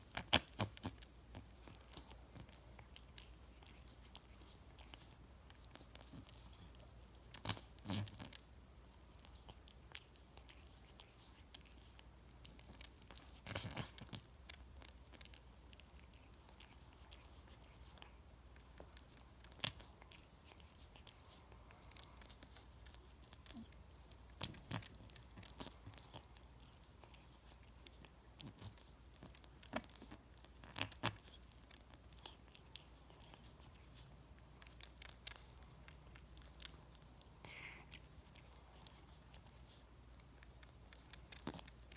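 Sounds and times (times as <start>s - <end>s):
cat licking itself: 0.0s - 41.9s.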